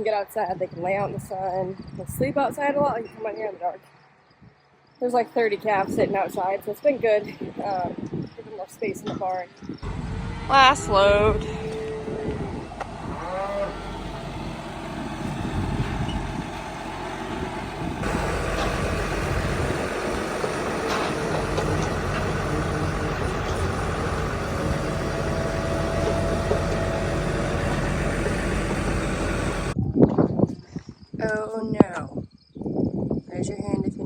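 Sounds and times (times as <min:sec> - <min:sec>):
vehicle engine running: 0:09.8 - 0:29.8.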